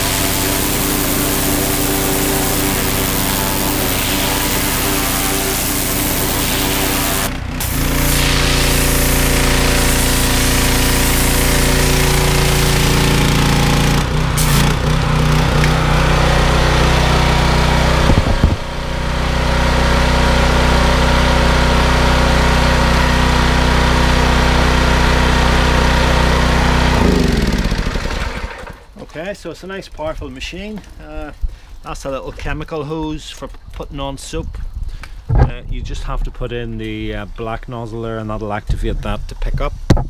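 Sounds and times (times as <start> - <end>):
pressure washer engine running: 0.0 - 29.0.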